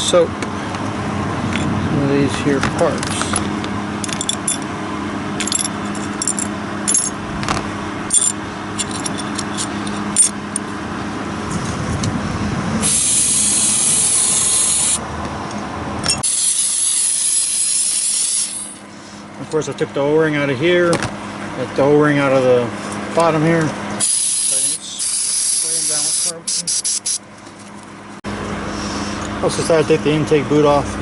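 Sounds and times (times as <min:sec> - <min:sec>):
small metal parts clinking: 0:03.1 - 0:04.7, 0:05.4 - 0:07.2, 0:08.1 - 0:10.6
aerosol spray hissing: 0:12.8 - 0:15.0, 0:16.2 - 0:18.8, 0:24.0 - 0:27.2.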